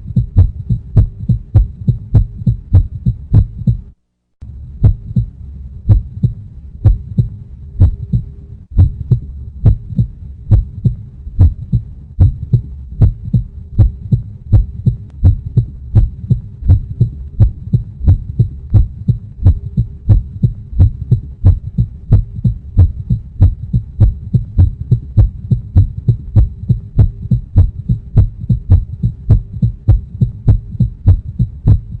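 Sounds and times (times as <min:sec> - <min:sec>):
continuous low hum: 0:00.0 - 0:32.0
heartbeat thumps: 0:00.0 - 0:32.0.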